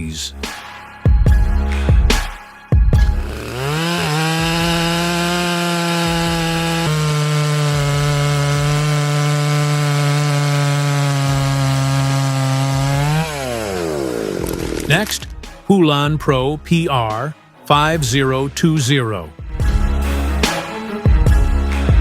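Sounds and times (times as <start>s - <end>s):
chainsaw cutting wood: 3.0s - 15.6s, 20.4s - 20.9s.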